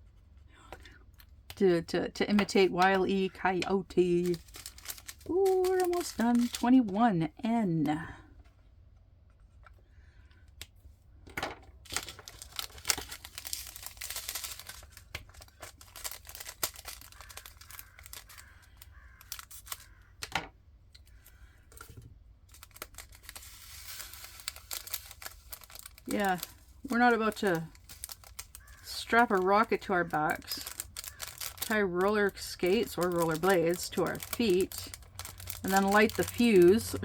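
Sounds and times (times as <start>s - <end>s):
plastic packets crinkling and tearing: 2.8s - 6.9s, 11.8s - 20.1s, 21.1s - 37.0s
small beads clicking and rattling: 4.2s - 6.6s, 11.9s - 19.9s, 22.5s - 37.0s.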